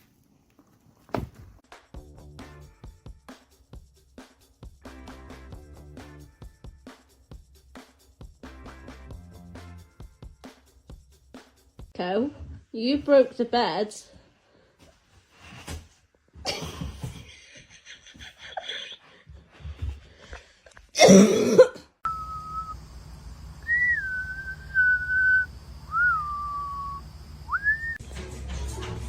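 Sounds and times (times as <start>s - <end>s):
cough-like burst: 21.0s - 21.9s
person whistling: 22.1s - 22.8s, 23.6s - 28.0s.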